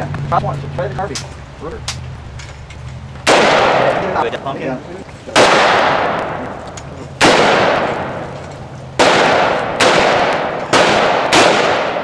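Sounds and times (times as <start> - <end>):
echoing gunshots: 3.2 - 4.3, 5.3 - 12.0.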